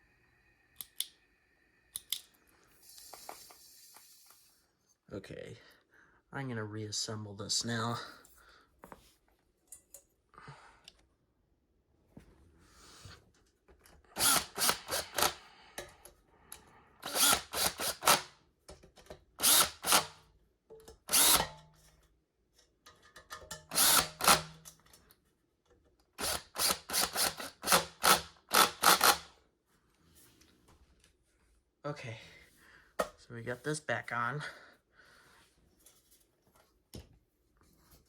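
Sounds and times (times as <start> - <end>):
power drill driving screws: 14.2 - 15.4, 17.0 - 18.3, 19.4 - 20.2, 21.1 - 21.5, 23.7 - 24.6, 26.2 - 29.3.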